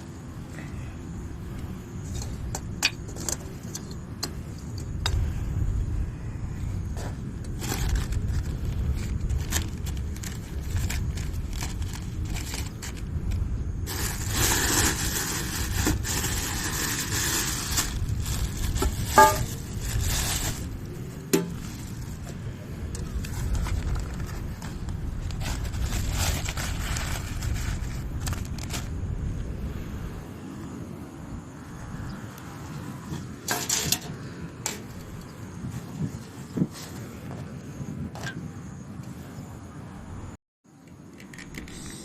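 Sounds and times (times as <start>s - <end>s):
low steady rumble: 0.0s - 32.2s
rustling: 6.8s - 29.0s
gear scraping and rattling: 6.9s - 29.0s.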